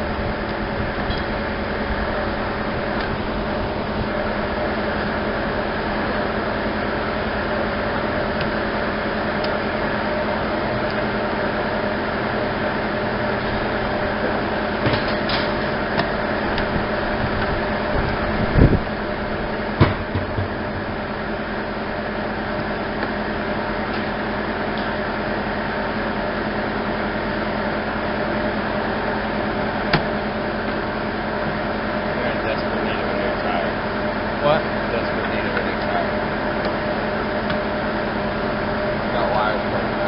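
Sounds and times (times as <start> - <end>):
steady mechanical hum: 0.0 - 40.0
loud knocks: 19.8 - 20.7.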